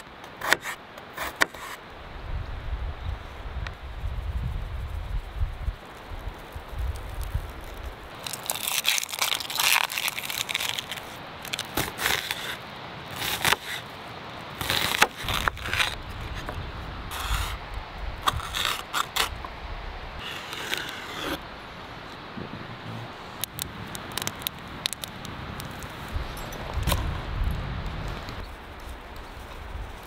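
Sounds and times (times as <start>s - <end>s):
crunching and scraping: 5.9s - 17.6s, 20.2s - 21.4s.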